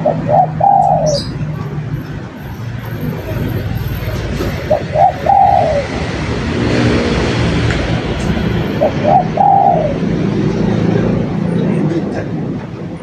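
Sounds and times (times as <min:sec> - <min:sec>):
dove cooing: 0:00.0 - 0:01.9, 0:03.0 - 0:06.4, 0:08.4 - 0:11.2
steady low rumble: 0:00.0 - 0:13.0.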